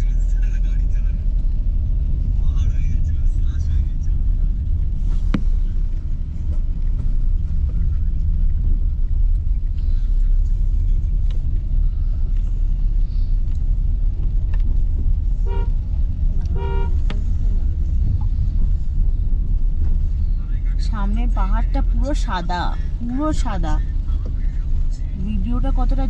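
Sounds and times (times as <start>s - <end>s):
car engine and road rumble: 0.0s - 26.0s
car horn toots: 15.4s - 17.2s.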